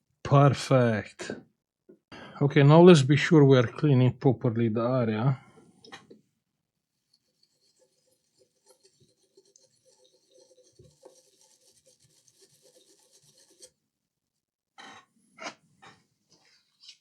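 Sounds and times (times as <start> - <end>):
small brush scrubbing: 6.8 - 13.8.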